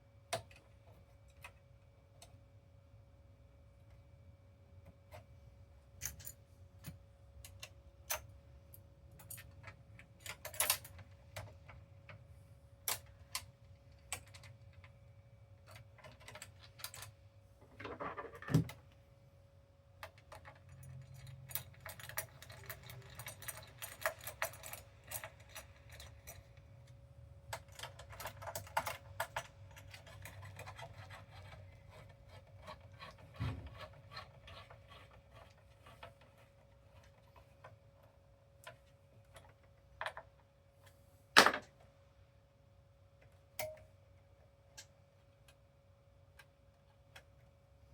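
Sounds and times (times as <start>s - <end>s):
faint steady hum: 0.0s - 47.9s
plastic parts clicking and clattering: 15.6s - 19.0s, 20.0s - 26.7s, 27.5s - 41.9s.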